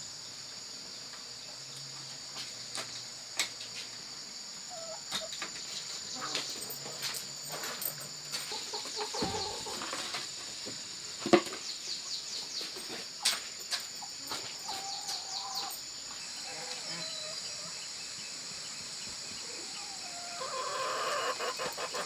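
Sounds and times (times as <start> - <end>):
high-pitched insect drone: 3.8 - 11.2, 11.8 - 22.0
chickens clucking: 4.7 - 7.0, 8.3 - 10.7, 14.0 - 15.8, 19.5 - 22.0.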